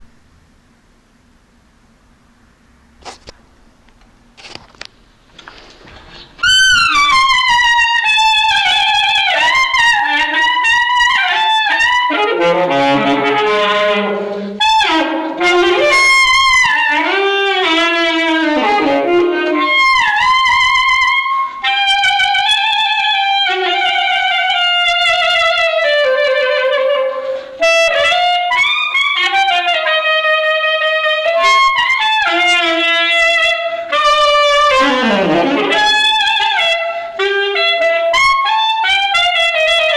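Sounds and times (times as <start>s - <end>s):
solo saxophone: 6.3s - 39.9s.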